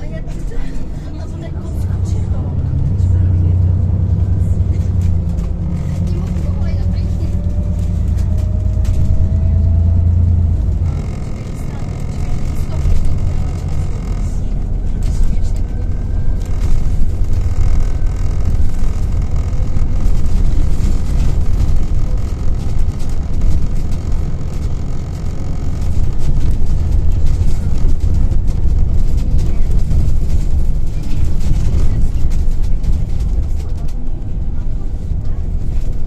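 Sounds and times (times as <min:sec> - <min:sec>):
bus engine rumble: 0:00.0 - 0:36.0
road noise: 0:00.0 - 0:36.0.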